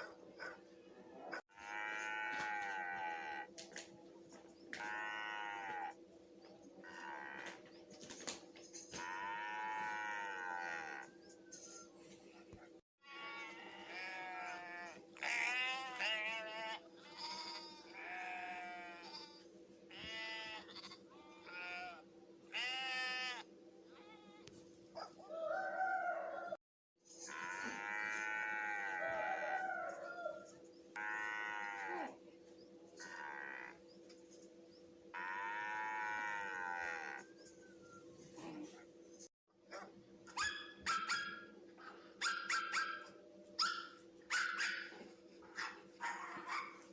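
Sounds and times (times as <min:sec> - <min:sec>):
sheep and lambs bleating: 0:01.2 - 0:03.8, 0:04.7 - 0:06.0, 0:06.8 - 0:07.7, 0:09.0 - 0:11.2, 0:13.0 - 0:24.6, 0:27.3 - 0:30.0, 0:30.9 - 0:32.2, 0:33.0 - 0:33.8, 0:35.1 - 0:37.3.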